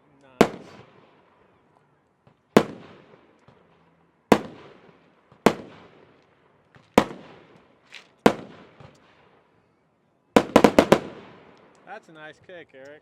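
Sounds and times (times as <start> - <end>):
firework shells banging: 2.2 - 9.4, 10.4 - 12.1.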